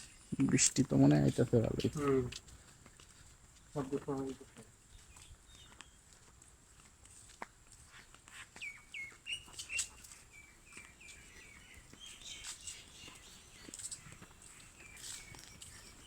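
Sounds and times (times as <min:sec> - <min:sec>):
bird chirping: 0:03.6 - 0:06.3, 0:08.4 - 0:16.0.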